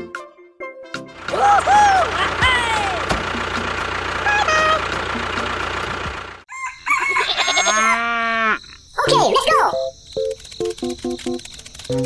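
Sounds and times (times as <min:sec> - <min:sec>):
steady engine-like noise: 0:01.2 - 0:06.5
higher pitched call: 0:04.2 - 0:05.0
rooster calls: 0:06.5 - 0:08.6.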